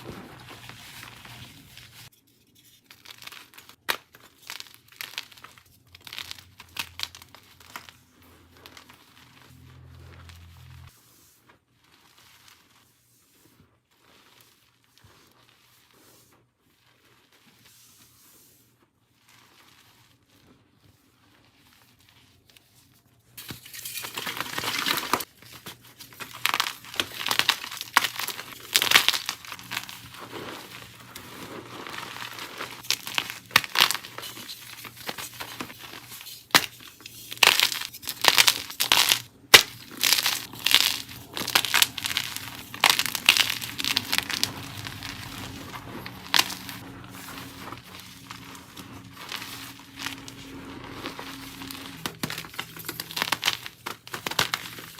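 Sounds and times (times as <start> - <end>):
chalk blocks crushed and crackling: 2.7 - 10.6, 23.4 - 54.9.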